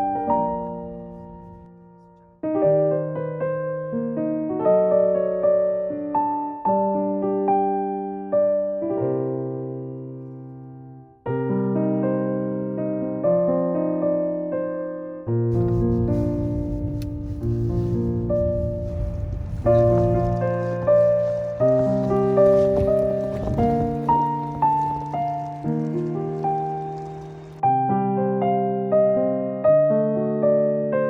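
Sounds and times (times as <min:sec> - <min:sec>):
gentle piano music: 0:00.0 - 0:31.0.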